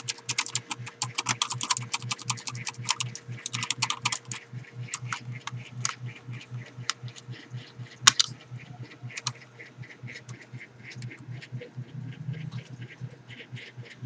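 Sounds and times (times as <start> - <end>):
keyboard key clicks: 0.0 - 6.0
low pulsing hum: 0.0 - 14.0.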